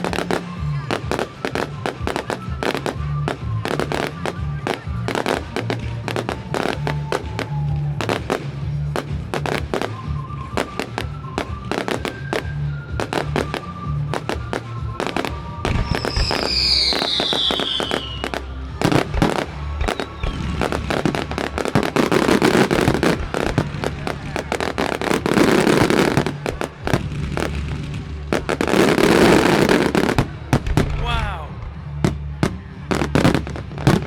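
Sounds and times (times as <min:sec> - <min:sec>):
firework crackling: 0:00.0 - 0:34.0
music playing: 0:00.0 - 0:34.0
falling firework whistle: 0:06.1 - 0:08.3, 0:09.3 - 0:27.6, 0:28.4 - 0:31.4.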